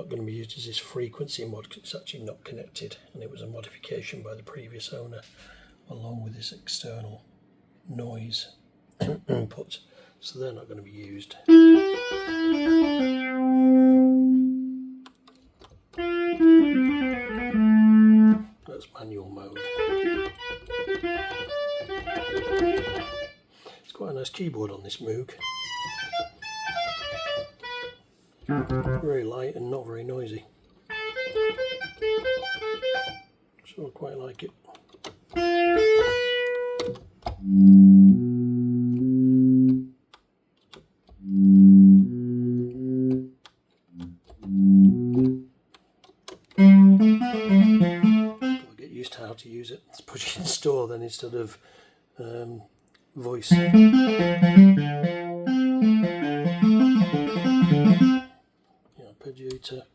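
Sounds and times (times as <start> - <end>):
buzzy analog synthesizer notes: 26.5 - 29.2, 37.4 - 39.9, 41.2 - 43.3, 44.0 - 45.5, 46.6 - 48.7, 53.5 - 58.3.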